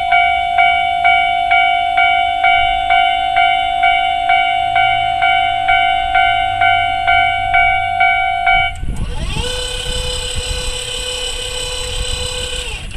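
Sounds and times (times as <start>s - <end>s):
level crossing warning bell: 0.0s - 8.9s
motor whine: 0.0s - 12.9s.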